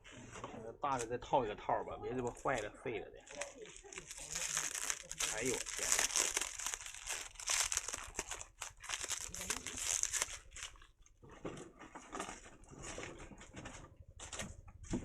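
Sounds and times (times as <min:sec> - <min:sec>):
plastic packing crinkling: 0:03.2 - 0:11.2.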